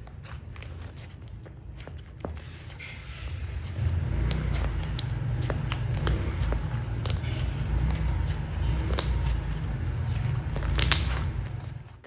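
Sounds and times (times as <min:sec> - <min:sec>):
steady low rumble: 0:02.8 - 0:12.0
slime squeezed by hand: 0:03.5 - 0:12.0.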